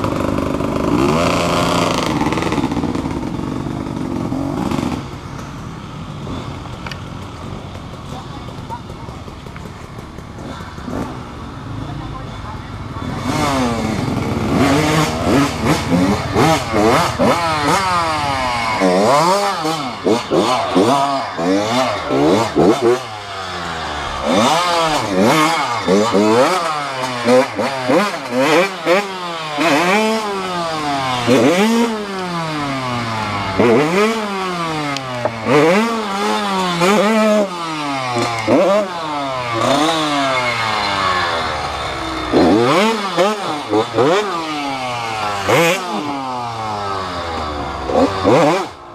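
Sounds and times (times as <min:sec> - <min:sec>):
motorcycle engine revving: 0:00.0 - 0:48.9.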